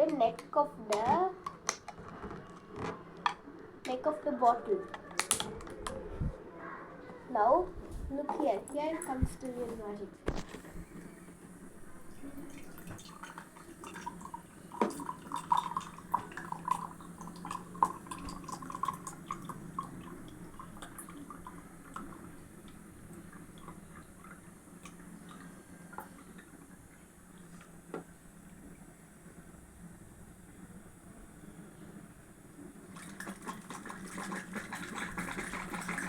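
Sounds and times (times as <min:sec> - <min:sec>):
water dripping into a tumbler: 0:12.0 - 0:28.9, 0:32.9 - 0:36.0.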